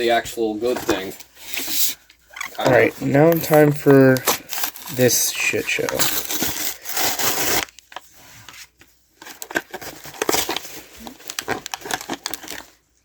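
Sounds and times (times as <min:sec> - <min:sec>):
wrapper crackling: 0:02.9 - 0:08.0, 0:09.3 - 0:12.8
packaging tearing open: 0:03.4 - 0:08.0, 0:09.2 - 0:12.8.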